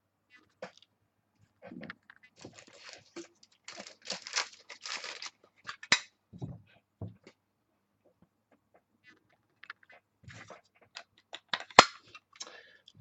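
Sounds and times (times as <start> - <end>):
plastic packaging crinkling: 2.4 - 5.9.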